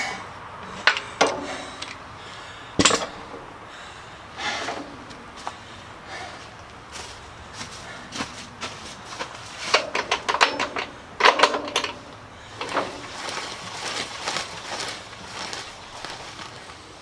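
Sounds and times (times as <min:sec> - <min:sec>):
sharp clicks and knocks on metal rim: 0:00.6 - 0:02.0, 0:02.8 - 0:03.5, 0:09.2 - 0:13.0.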